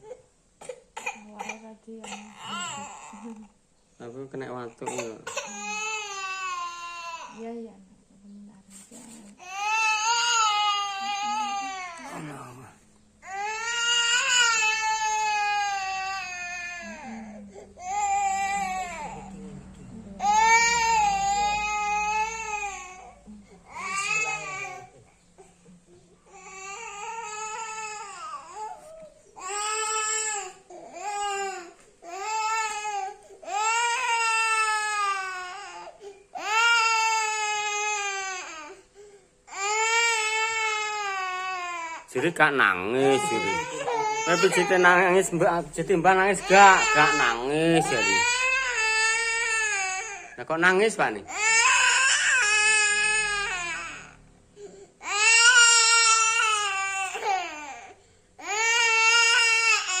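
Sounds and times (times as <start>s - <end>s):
small boy crying: 43.0s - 45.1s, 46.4s - 50.3s.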